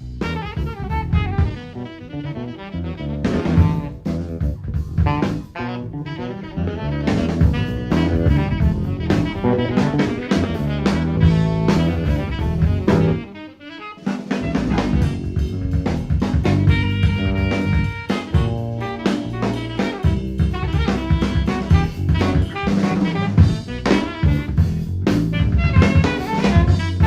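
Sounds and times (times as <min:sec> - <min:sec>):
electric bass line: 0:00.0 - 0:13.4, 0:14.3 - 0:27.0
drum kit with rimshots: 0:00.0 - 0:27.0
alto saxophone notes: 0:00.2 - 0:27.0.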